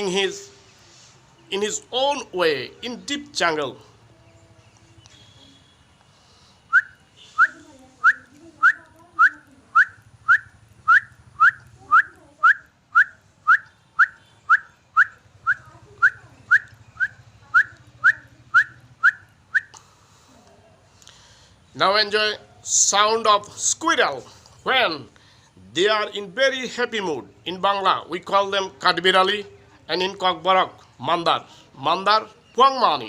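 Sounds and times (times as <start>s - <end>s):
man whistling bird song: 6.7s - 19.7s.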